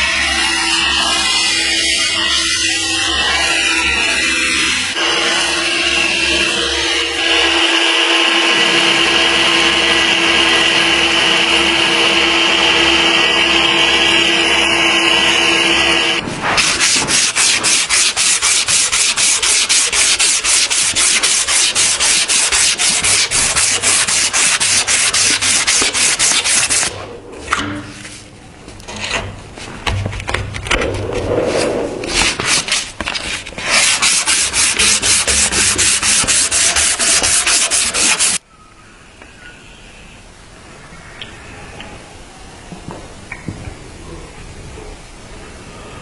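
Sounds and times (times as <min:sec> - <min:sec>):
electric sander on metal: 0:00.0 - 0:26.9, 0:33.8 - 0:38.4
blade rubbed on abrasive: 0:00.0 - 0:27.0, 0:31.4 - 0:38.4.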